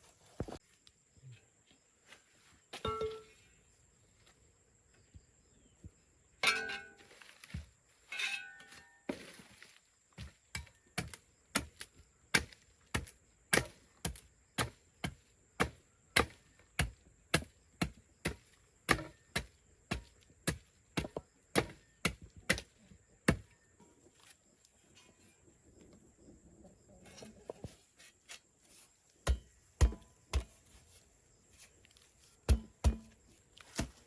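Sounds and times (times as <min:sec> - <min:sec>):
sharp strikes on wood: 0:29.2 - 0:30.5, 0:32.5 - 0:33.2.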